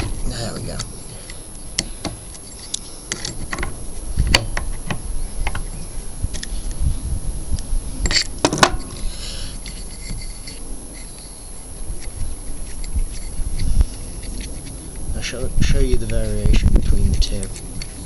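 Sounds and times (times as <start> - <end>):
metal tools and parts clinking: 0.0 - 3.7, 8.0 - 11.4.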